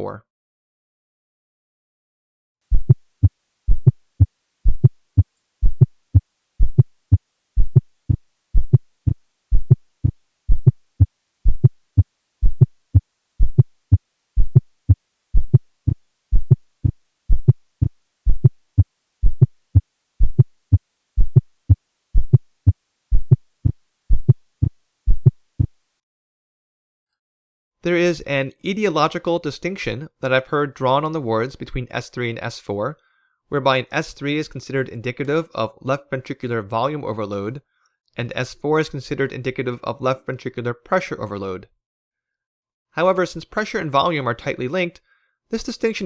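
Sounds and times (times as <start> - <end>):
heartbeat thumps through stethoscope: 2.7 - 25.8.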